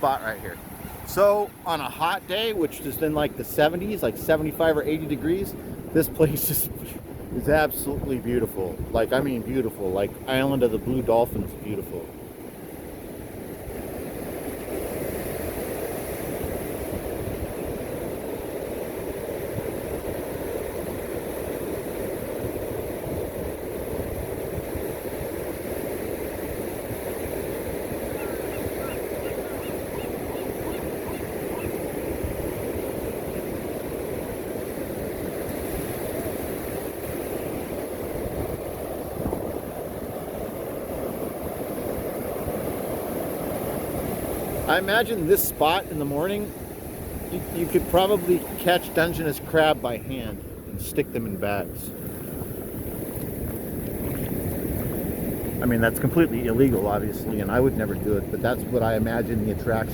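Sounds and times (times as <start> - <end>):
ocean surf: 0.0 - 59.9
wind rumbling on microphone: 2.8 - 59.9
faint quick bird calls: 28.1 - 31.8.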